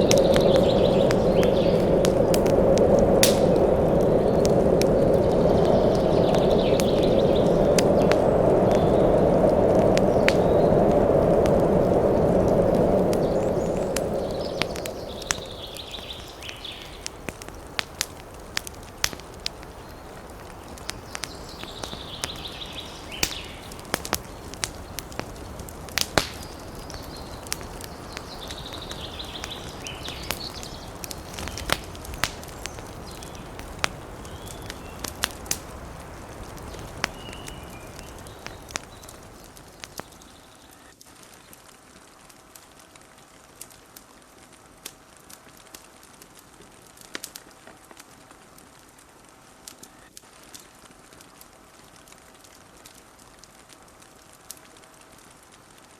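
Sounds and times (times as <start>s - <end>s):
wind hiss: 0.0s - 40.6s
wood fire crackling: 0.0s - 55.9s.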